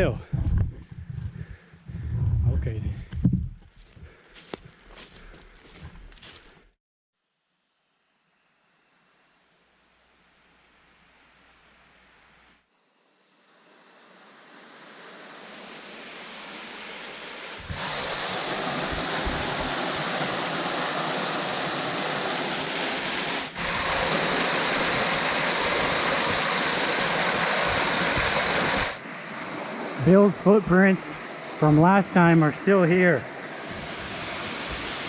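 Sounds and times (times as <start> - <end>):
wind buffeting microphone: 0.0 - 4.1
waterfall rushing: 14.8 - 29.0, 33.2 - 35.0.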